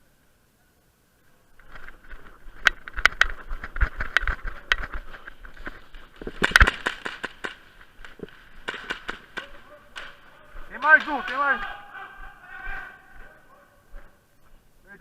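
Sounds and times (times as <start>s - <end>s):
rustling background: 1.2s - 15.0s
airsoft gun shots: 6.4s - 7.6s, 8.6s - 10.2s.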